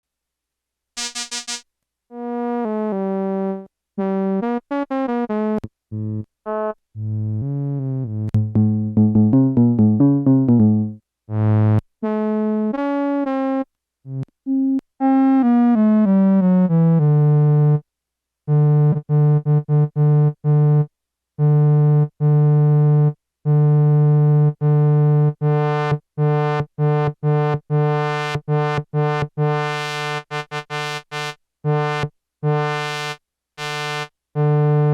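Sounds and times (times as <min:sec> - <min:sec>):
analogue synthesizer notes: 0:01.0 - 0:01.6, 0:05.3 - 0:12.9, 0:23.7 - 0:34.9.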